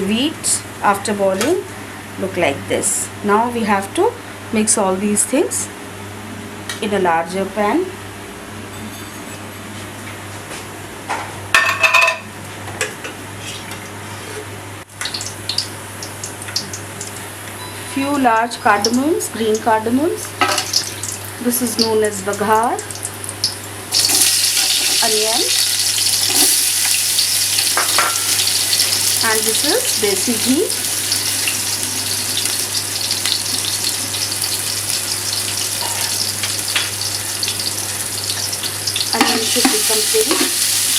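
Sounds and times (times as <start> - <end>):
onion sizzling in hot ghee: 20.3 - 40.9
metal cookware clanking: 27.6 - 28.9, 35.7 - 37.6, 39.2 - 40.6.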